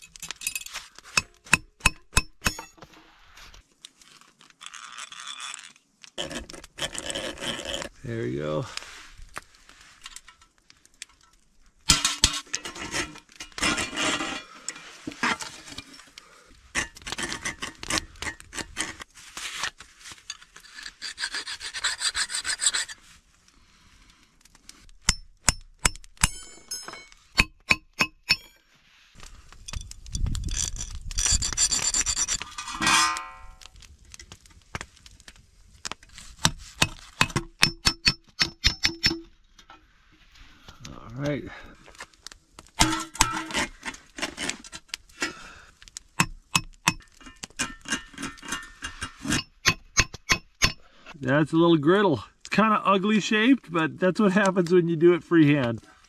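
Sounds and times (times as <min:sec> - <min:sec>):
metal rasping and scraping: 0:11.9 - 0:16.2, 0:16.8 - 0:23.1, 0:30.4 - 0:33.7, 0:42.8 - 0:44.9, 0:46.2 - 0:51.0.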